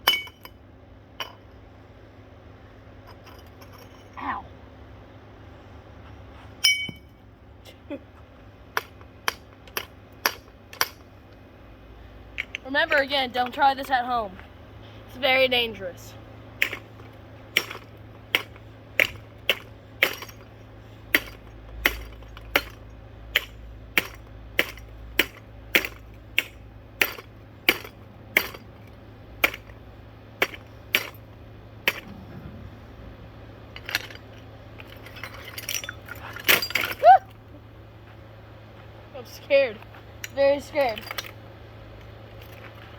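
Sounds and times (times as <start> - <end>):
light clattering: 16.6 - 37.4.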